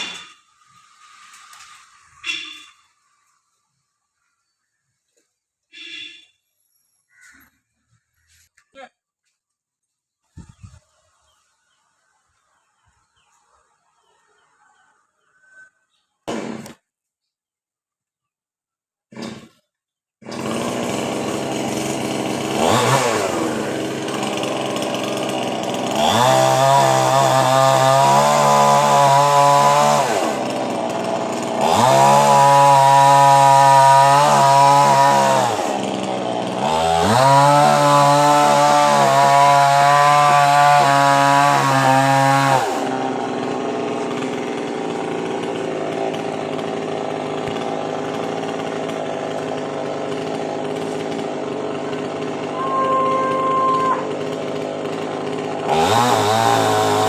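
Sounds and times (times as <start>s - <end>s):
two-stroke chainsaw revving: 16.2s - 16.9s, 19.1s - 57.0s.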